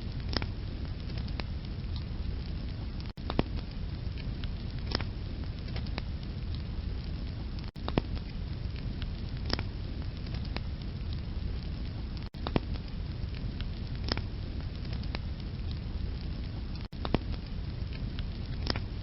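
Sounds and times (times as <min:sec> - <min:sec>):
fire crackling and popping: 0:00.0 - 0:19.0.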